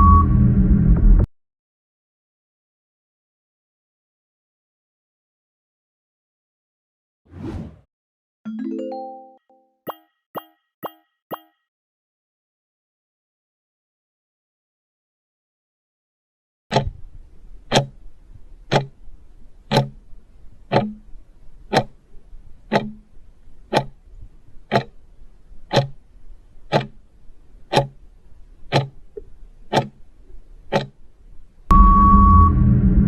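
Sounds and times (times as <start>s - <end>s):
clock ticking: 9.9s - 11.6s, 16.7s - 31.0s.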